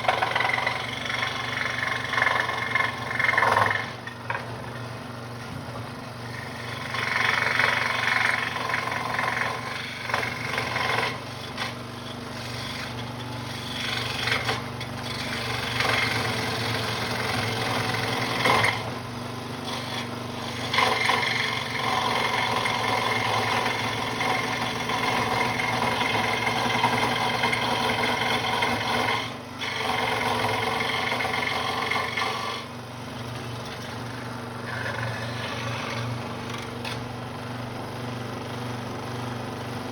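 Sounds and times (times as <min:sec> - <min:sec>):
scroll saw cutting wood: 0:00.0 - 0:38.7
motor humming: 0:19.7 - 0:39.9.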